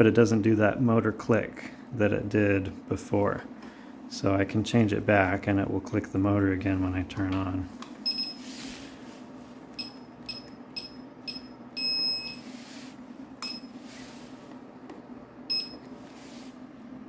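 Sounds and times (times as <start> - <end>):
electric unicycle beeps: 8.0 - 8.5, 9.8 - 12.6, 13.4 - 13.8, 15.5 - 15.9.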